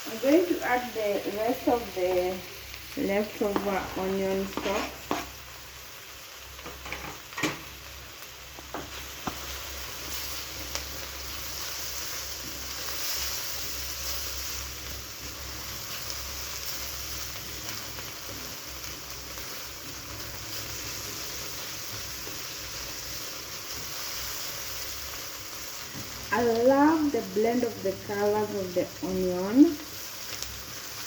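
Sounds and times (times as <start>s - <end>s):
onions sizzling in oil: 0.0s - 31.0s
utensil tapping pan: 3.4s - 5.3s.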